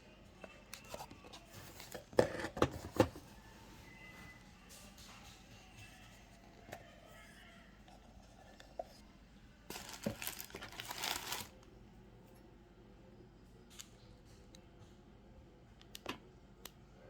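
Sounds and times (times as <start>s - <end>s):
packaging crinkling and tearing: 9.7s - 11.7s.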